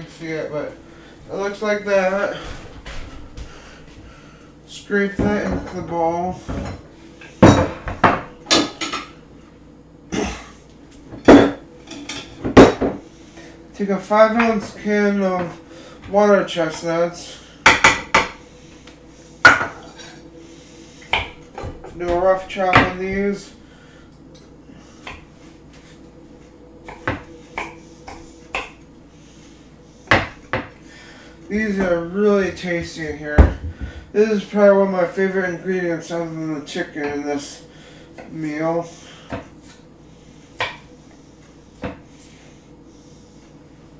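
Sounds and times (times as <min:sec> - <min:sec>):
knife chopping on cutting board: 0:26.8 - 0:28.8, 0:40.6 - 0:40.8.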